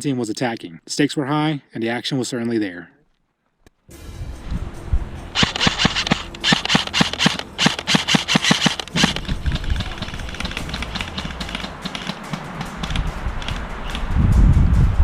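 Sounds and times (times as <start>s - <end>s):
airsoft guns firing: 5.4s - 13.6s.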